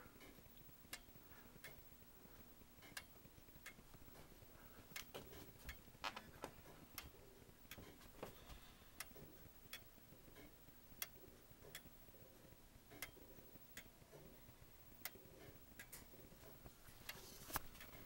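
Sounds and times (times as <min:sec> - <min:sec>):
clock pendulum ticking: 0:00.1 - 0:02.0, 0:02.6 - 0:04.2, 0:09.0 - 0:12.2, 0:12.8 - 0:16.7.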